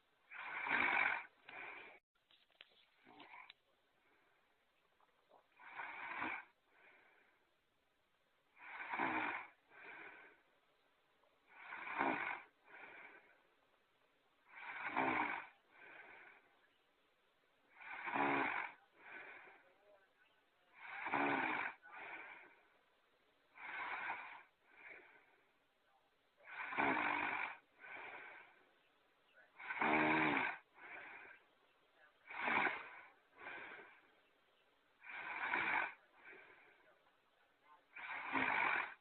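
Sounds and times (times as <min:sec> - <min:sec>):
cartoon snoring sound effect: 0:00.3 - 0:02.0, 0:05.6 - 0:06.5, 0:08.6 - 0:10.2, 0:11.5 - 0:13.2, 0:14.5 - 0:16.4, 0:17.7 - 0:19.5, 0:20.7 - 0:22.5, 0:23.6 - 0:25.1, 0:26.4 - 0:28.6, 0:29.5 - 0:31.4, 0:32.2 - 0:34.0, 0:35.0 - 0:36.6, 0:37.8 - 0:39.0.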